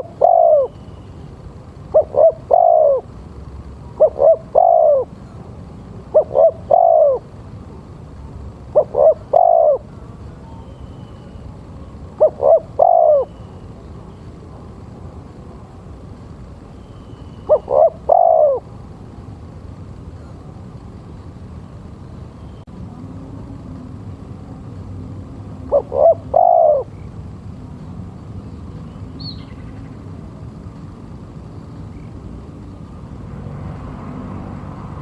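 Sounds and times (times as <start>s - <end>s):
dove cooing: 0.0s - 0.8s, 1.8s - 7.4s, 8.6s - 10.0s, 11.1s - 13.6s, 17.4s - 18.7s, 25.5s - 27.1s
low background hiss: 0.0s - 35.0s.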